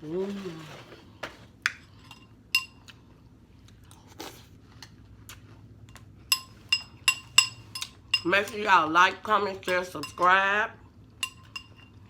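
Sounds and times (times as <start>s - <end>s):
spoon clinking against bowl: 2.1s - 2.8s, 6.3s - 10.6s, 11.2s - 12.0s.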